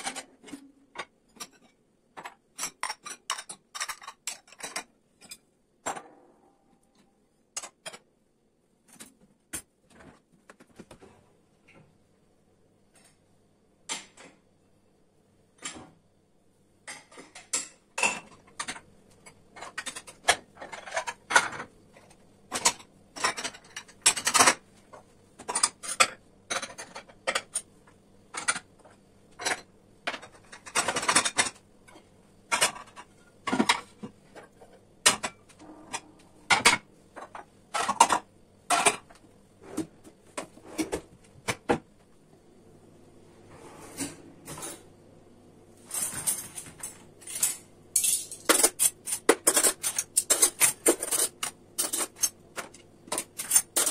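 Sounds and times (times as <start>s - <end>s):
dishes and cutlery clinking: 0.0s - 6.1s, 16.9s - 24.6s, 25.4s - 27.7s, 28.3s - 39.2s, 45.9s - 53.9s.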